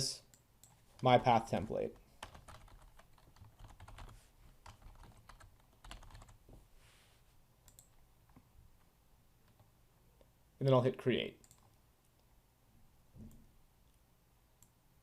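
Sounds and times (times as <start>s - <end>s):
computer keyboard keystrokes: 2.2s - 6.4s, 7.7s - 8.0s, 11.4s - 11.7s.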